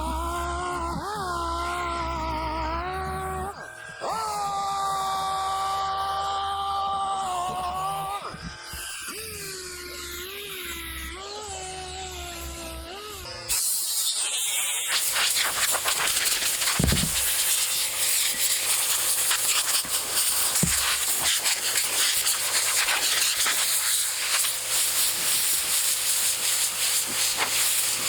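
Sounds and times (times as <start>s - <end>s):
scratching on rusty axe head: 15.4s - 17.7s, 18.5s - 23.6s
dull knocks: 16.8s - 17.3s.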